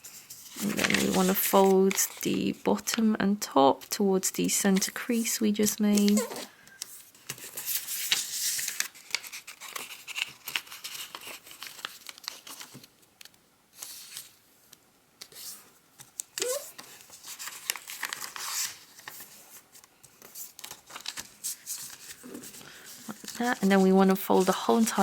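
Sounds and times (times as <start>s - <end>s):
paper folds scraping: 0.0s - 2.9s, 5.9s - 12.9s, 15.2s - 25.0s
paper crinkling and rustling: 0.0s - 3.0s, 4.8s - 14.4s, 15.2s - 25.0s.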